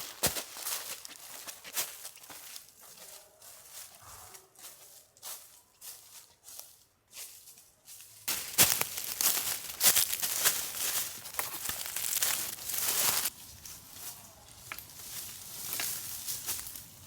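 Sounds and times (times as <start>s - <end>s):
crinkling and rustling: 8.2s - 17.0s.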